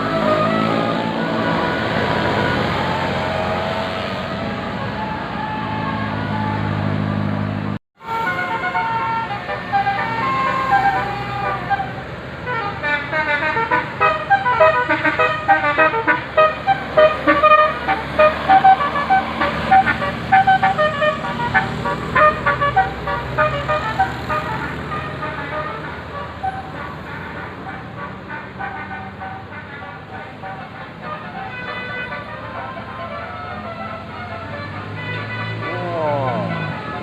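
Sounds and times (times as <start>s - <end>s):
bus melodic horn: 0.0s - 6.9s, 8.0s - 37.0s.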